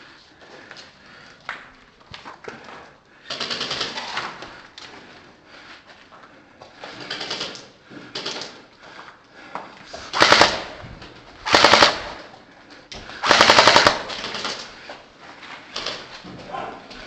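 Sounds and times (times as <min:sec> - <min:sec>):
gel blaster automatic bursts: 0:10.1 - 0:10.8, 0:11.4 - 0:12.3, 0:13.2 - 0:14.6.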